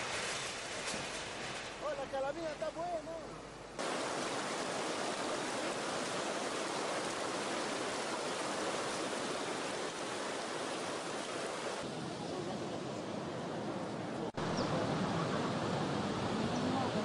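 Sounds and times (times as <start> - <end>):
fast-flowing water rushing: 3.8 - 12.0.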